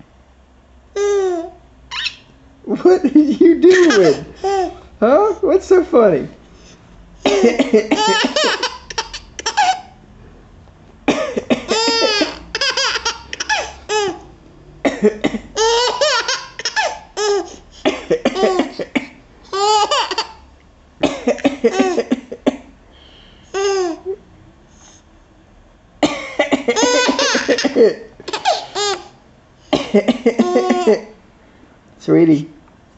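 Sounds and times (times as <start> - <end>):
baby laughing: 1.0 - 2.2, 3.0 - 4.8, 7.3 - 10.0, 11.4 - 14.3, 15.6 - 20.5, 21.3 - 22.3, 23.5 - 24.2, 26.7 - 29.2, 30.3 - 31.2
adult coughing: 7.2 - 8.4, 11.1 - 12.1, 14.9 - 15.6, 17.8 - 19.2, 21.0 - 22.7, 26.0 - 28.1, 29.7 - 31.2.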